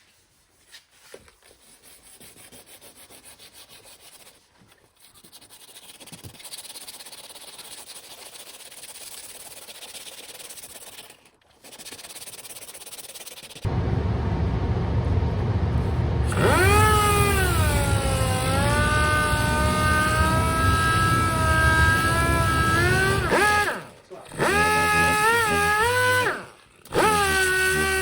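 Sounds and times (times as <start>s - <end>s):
sandpaper rubbing on car panel: 0.0s - 13.7s.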